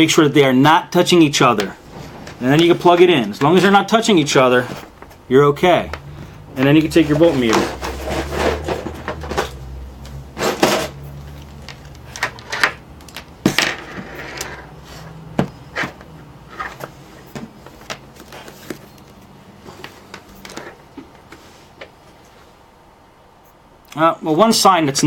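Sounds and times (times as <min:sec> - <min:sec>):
voltmeter probes and wires clicking: 0:11.1 - 0:13.3.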